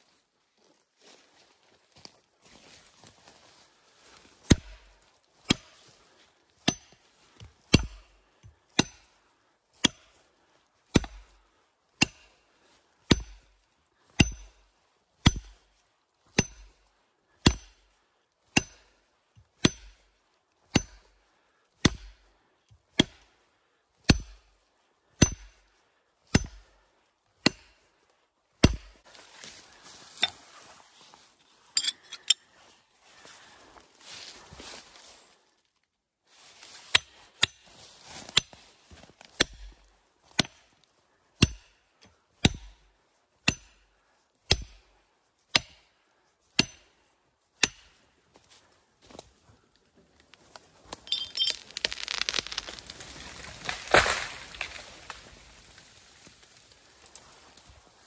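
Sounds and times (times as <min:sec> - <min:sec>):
axe chopping tree: 0:04.4 - 0:05.8, 0:06.6 - 0:07.0, 0:07.7 - 0:08.1, 0:08.7 - 0:09.2, 0:09.8 - 0:10.2, 0:10.9 - 0:11.3, 0:12.0 - 0:12.4, 0:13.0 - 0:13.5, 0:14.2 - 0:14.6, 0:15.2 - 0:15.6, 0:16.3 - 0:16.8, 0:17.4 - 0:17.8, 0:18.5 - 0:18.9, 0:19.6 - 0:20.0, 0:20.7 - 0:21.1, 0:21.8 - 0:22.2, 0:22.9 - 0:23.3, 0:24.0 - 0:24.4, 0:25.2 - 0:25.6, 0:26.3 - 0:26.7, 0:27.4 - 0:27.8, 0:28.6 - 0:29.0, 0:36.8 - 0:38.6, 0:39.4 - 0:39.8, 0:40.4 - 0:40.7, 0:41.4 - 0:41.8, 0:42.4 - 0:42.8, 0:43.4 - 0:43.8, 0:44.5 - 0:44.8, 0:45.5 - 0:45.9, 0:46.5 - 0:46.9, 0:47.6 - 0:48.0, 0:51.6 - 0:55.3
rustling: 0:50.2 - 0:58.0.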